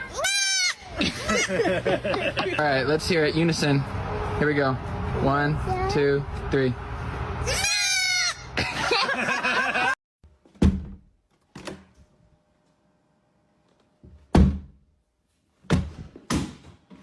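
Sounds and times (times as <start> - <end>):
loud voice or bleating: 7.4 - 8.5.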